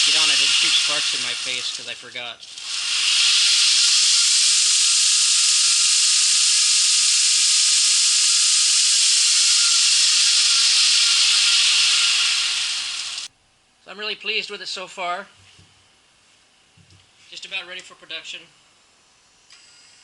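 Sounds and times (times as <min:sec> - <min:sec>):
belt grinder hissing: 0:00.0 - 0:13.3.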